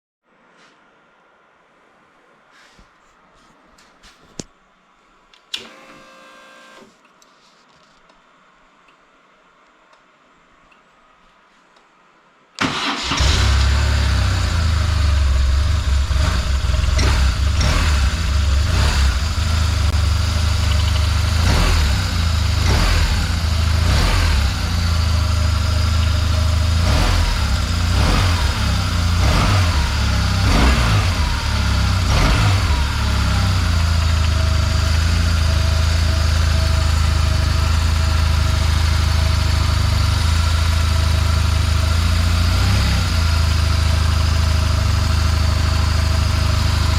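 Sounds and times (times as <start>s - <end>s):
motorcycle engine starting: 12.6s - 46.9s
motorcycle engine revving: 12.8s - 46.9s
motorcycle engine idling: 13.6s - 30.5s, 31.1s - 42.5s.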